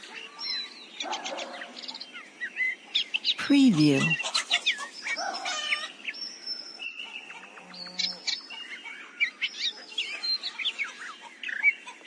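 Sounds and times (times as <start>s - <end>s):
songbirds chirping and whistling: 0.2s - 3.4s, 4.9s - 12.0s.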